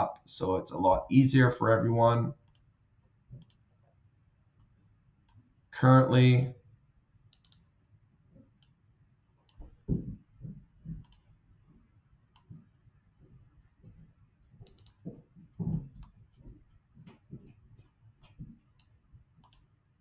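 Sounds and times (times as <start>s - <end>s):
computer mouse clicks: 2.4s - 2.7s, 3.3s - 3.6s, 7.3s - 7.7s, 11.0s - 11.3s, 12.3s - 12.5s, 14.6s - 15.0s, 18.7s - 19.7s
soft knocks on desk: 9.6s - 11.0s.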